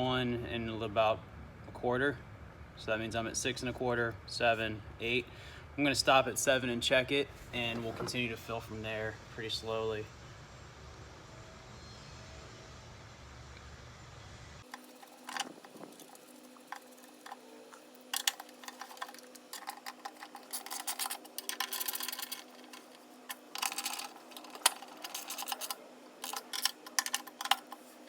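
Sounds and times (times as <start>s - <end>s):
tool clicks and light rattles: 14.6s - 27.9s.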